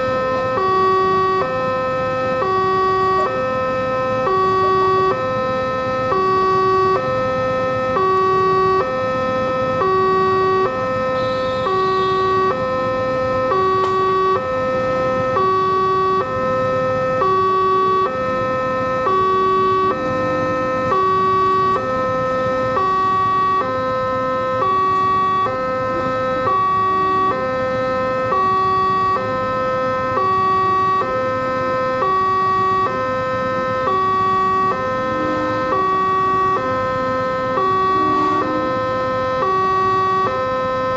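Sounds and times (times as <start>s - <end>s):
two-tone level crossing alarm: 0.0s - 40.9s.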